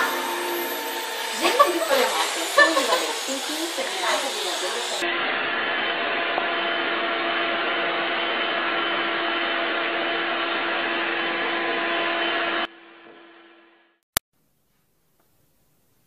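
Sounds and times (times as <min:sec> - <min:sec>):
vacuum cleaner motor running: 0:00.0 - 0:12.7.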